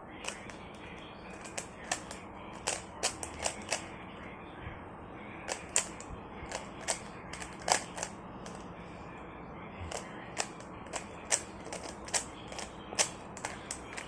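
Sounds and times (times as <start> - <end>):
puzzle cube plastic clicks: 0.2 - 3.9, 5.5 - 8.6, 9.9 - 14.0.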